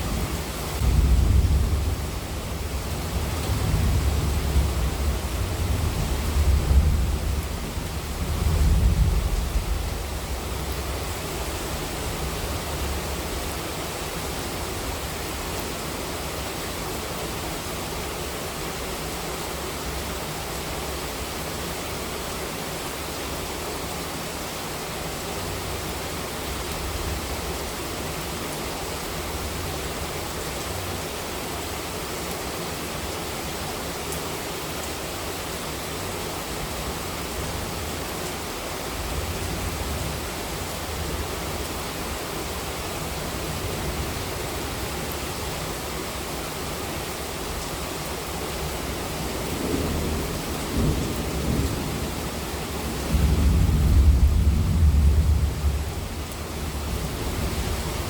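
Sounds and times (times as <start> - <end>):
heavy rain hiss: 0.0 - 58.0.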